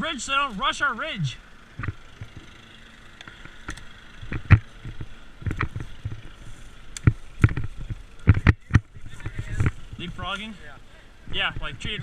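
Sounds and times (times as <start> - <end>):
footsteps on rough ground: 3.2 - 12.0.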